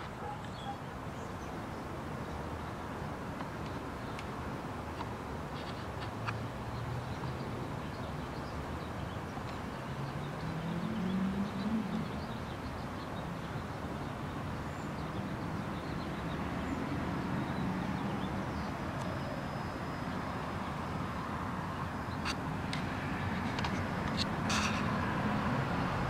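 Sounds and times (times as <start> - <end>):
vehicle passing: 9.7 - 13.5, 15.1 - 26.0.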